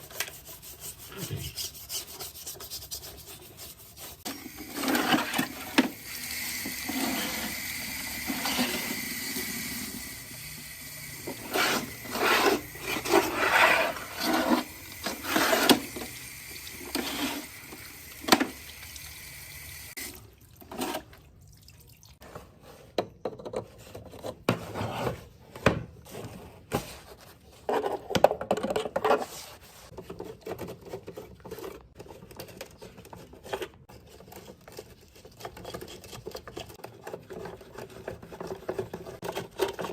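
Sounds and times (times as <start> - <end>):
rubbing: 0.0 - 5.8
water running from a tap: 4.3 - 20.3.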